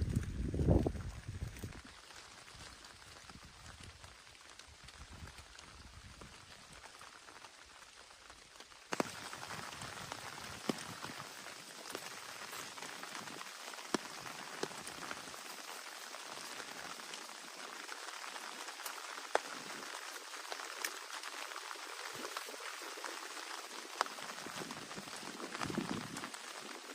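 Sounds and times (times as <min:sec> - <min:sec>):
heavy rain falling: 0:00.0 - 0:26.9
raindrops ticking close by: 0:00.0 - 0:26.9.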